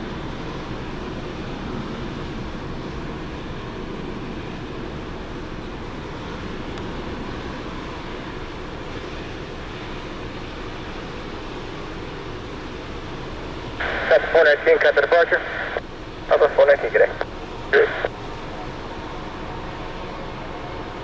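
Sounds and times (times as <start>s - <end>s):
faint steady hum: 5.4s - 21.0s
jet engine roar: 13.7s - 21.0s.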